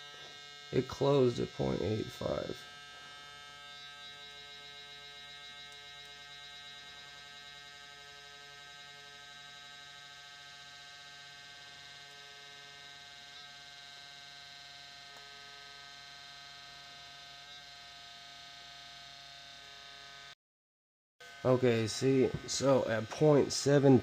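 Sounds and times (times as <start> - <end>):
electric hum: 0.0 - 20.4, 21.2 - 24.0
small motor whining: 0.0 - 20.4, 21.2 - 24.0.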